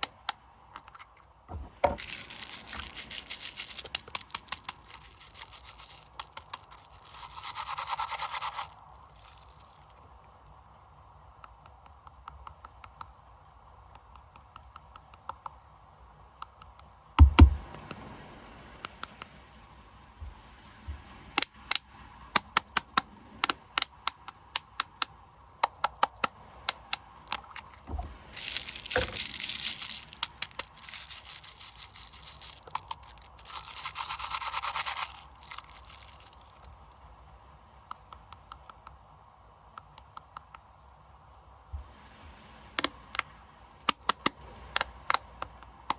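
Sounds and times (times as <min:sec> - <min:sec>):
plastic wrappers crinkling: 0:00.8 - 0:10.0, 0:27.3 - 0:37.0
packaging tearing: 0:02.0 - 0:09.9, 0:27.4 - 0:36.8.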